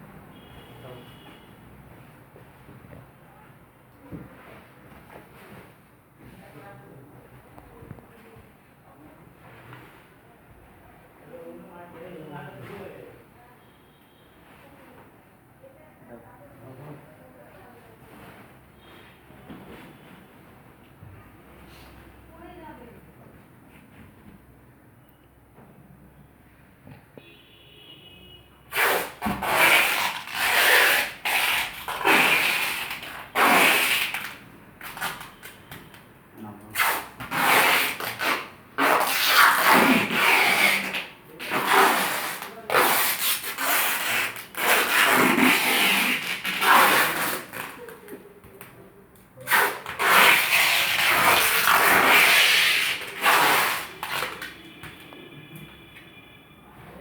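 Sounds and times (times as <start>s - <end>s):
foam and tape rasping rustling: 28.7s - 36.0s, 36.7s - 48.1s, 49.4s - 54.8s.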